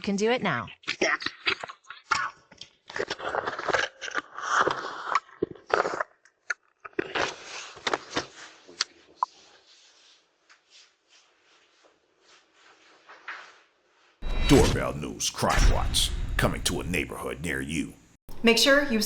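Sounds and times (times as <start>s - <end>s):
scraping and rustling near microphone: 7.4s - 14.2s.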